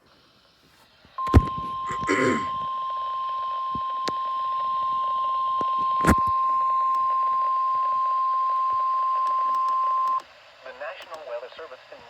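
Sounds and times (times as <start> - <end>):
steady high alarm tone: 1.2 - 10.2
static clicks: 1.2 - 10.3.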